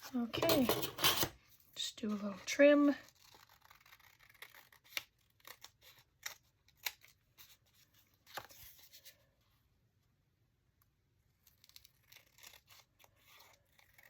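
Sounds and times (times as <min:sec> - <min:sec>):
scissors snipping paper: 0:02.0 - 0:07.6, 0:11.4 - 0:14.0.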